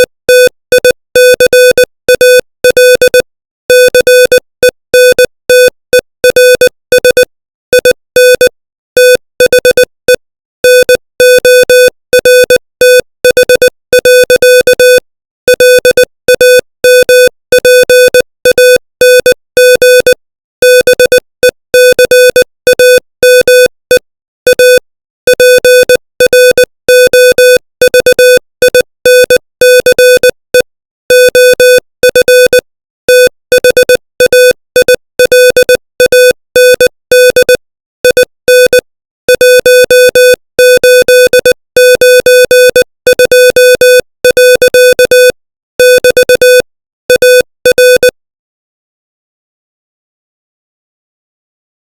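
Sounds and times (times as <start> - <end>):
morse code beeps: 0.0 - 21.2, 21.8 - 48.2.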